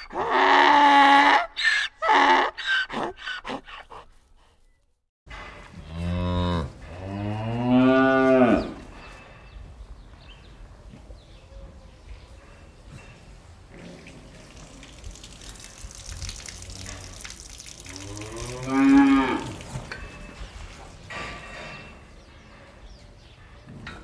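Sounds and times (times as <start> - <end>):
cow mooing: 5.8 - 8.9, 16.2 - 20.0.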